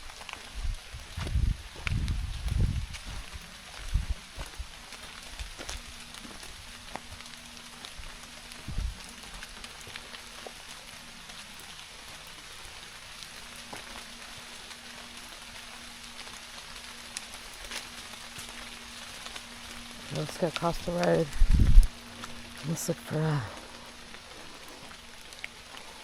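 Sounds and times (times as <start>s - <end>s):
steady rain falling: 0.0s - 26.0s.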